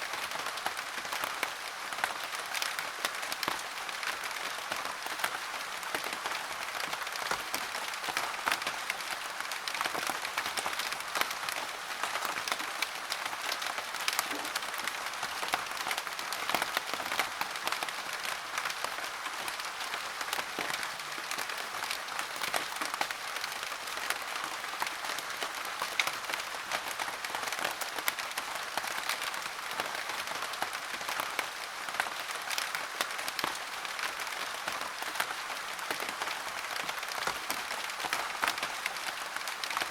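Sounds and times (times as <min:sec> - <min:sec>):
steady rain patter: 0:00.0 - 0:39.9.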